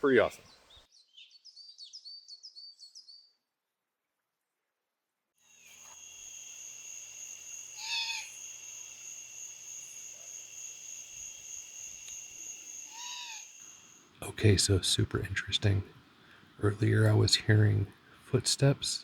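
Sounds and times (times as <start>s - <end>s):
insects trilling: 5.4s - 19.0s
owl calling: 6.6s - 19.0s.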